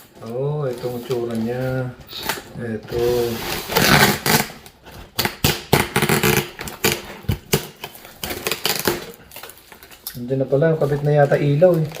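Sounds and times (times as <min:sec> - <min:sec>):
plastic packaging rustling: 0:00.0 - 0:12.0.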